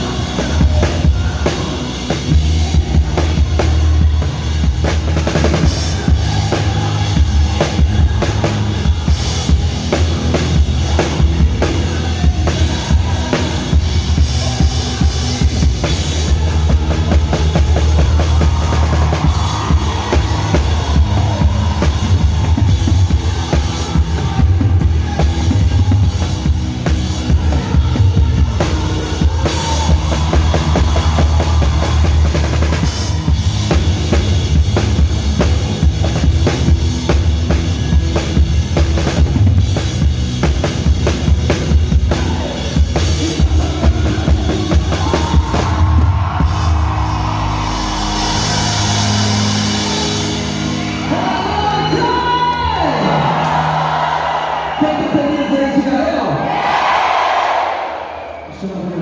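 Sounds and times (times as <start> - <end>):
live band music: 0.0 - 59.0.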